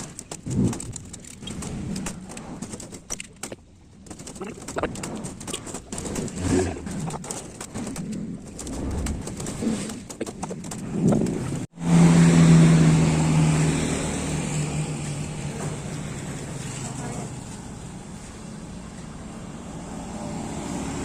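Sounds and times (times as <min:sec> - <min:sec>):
doves cooing: 0:00.0 - 0:11.4
small clicks and knocks: 0:00.0 - 0:11.6
low engine hum: 0:10.6 - 0:21.0.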